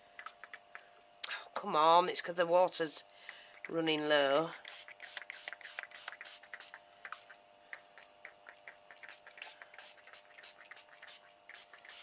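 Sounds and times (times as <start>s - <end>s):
spray bottle spurts: 4.4s - 12.0s.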